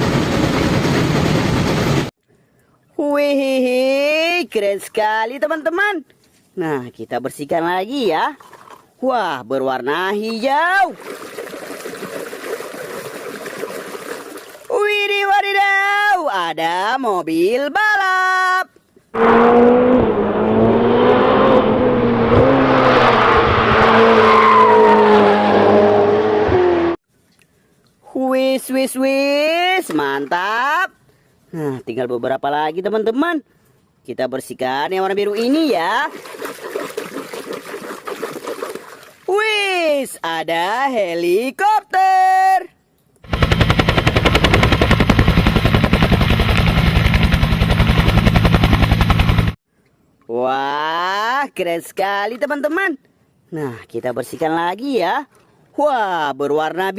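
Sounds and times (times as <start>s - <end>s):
race car engine at high revs: 19.2s - 27.0s
helicopter rotor chopping: 43.2s - 49.6s
low engine hum: 43.3s - 49.6s.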